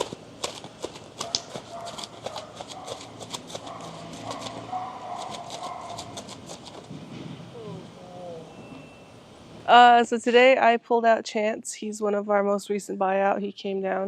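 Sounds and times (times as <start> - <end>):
horse hooves clip-clopping: 0.0 - 7.2
faint wavering tone: 7.5 - 9.2.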